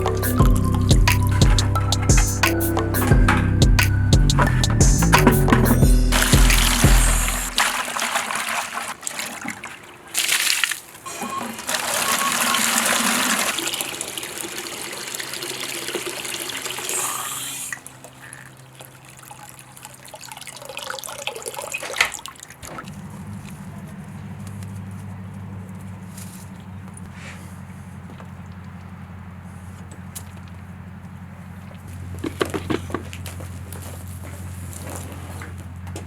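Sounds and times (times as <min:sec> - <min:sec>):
water trickling: 0:06.1 - 0:24.7
water spraying onto vehicle: 0:06.1 - 0:24.8.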